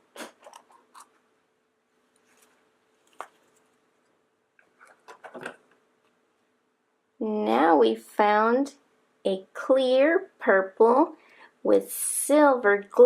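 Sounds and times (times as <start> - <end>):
plastic rustling: 2.0 - 5.8.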